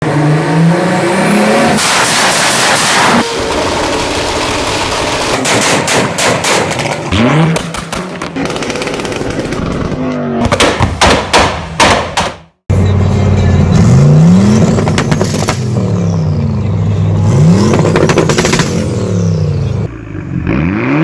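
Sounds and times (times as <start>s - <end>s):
engine revving: 0.0s - 10.4s, 12.7s - 21.0s
exhaust bangs and pops: 1.8s - 12.6s, 14.6s - 15.8s, 17.6s - 18.9s
rasping exhaust note: 3.1s - 5.2s.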